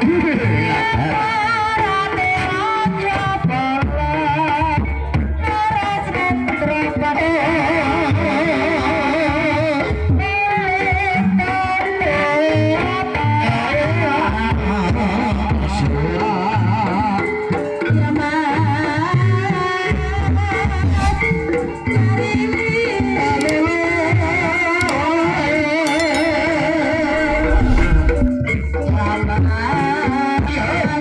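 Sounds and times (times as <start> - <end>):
person singing wavering melody: 25.9 - 27.9
held instrument tones: 25.9 - 28.6.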